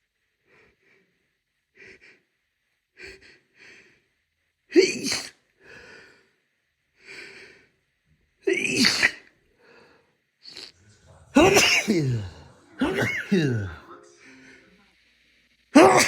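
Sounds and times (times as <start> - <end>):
person sneezing: 4.8 - 5.4, 8.5 - 9.3, 11.4 - 13.8, 15.8 - 16.0.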